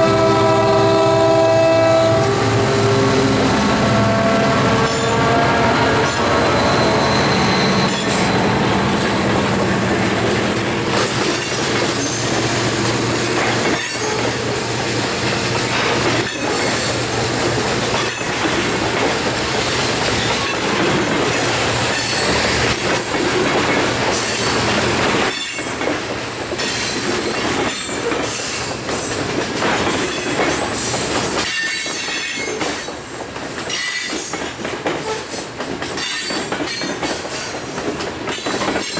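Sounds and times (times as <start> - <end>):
low diesel locomotive drone: 0.0 - 25.3
train wheels squealing: 4.8 - 9.2, 9.8 - 17.2, 24.1 - 25.8, 29.9 - 32.9, 33.7 - 37.6
wheels clicking over rail joints: 15.6 - 38.9.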